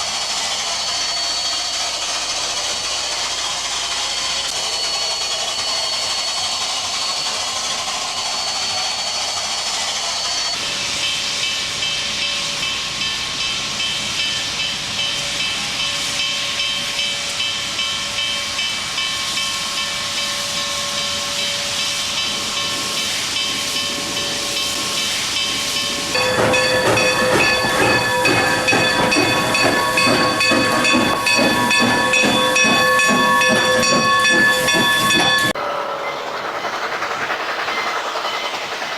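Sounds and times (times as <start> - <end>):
steam hissing: 0.0 - 38.9
whistle-like tones: 4.2 - 10.6, 26.2 - 36.7.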